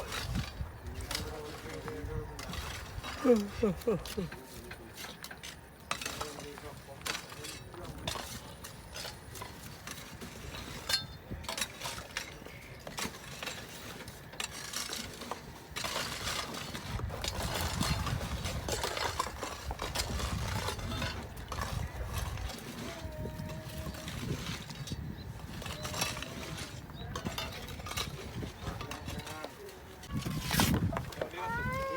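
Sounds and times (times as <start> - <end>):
stones and hand tools clinking: 0.0 - 31.9.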